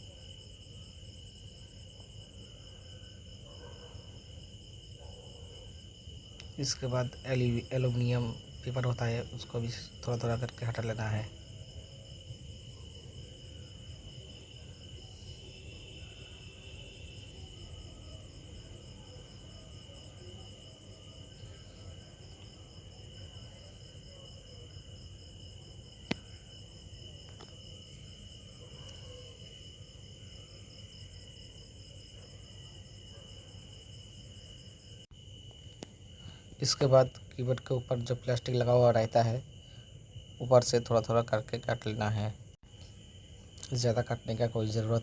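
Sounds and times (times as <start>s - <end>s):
crickets trilling: 0.0s - 45.0s.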